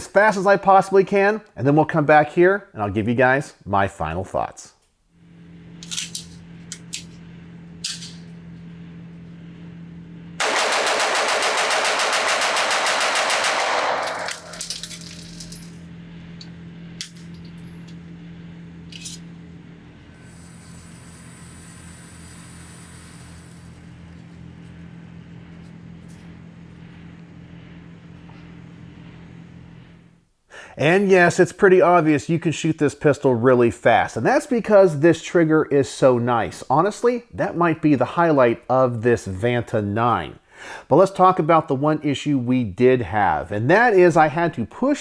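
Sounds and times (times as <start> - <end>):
steady low hum: 0.0 - 40.9
rapid pistol fire: 10.4 - 14.5.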